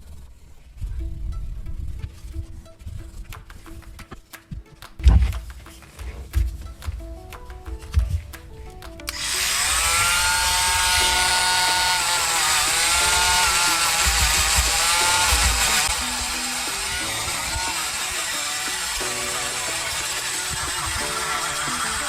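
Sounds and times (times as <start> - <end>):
background music: 0.1 - 22.0
power tool whining and grinding: 9.1 - 22.0.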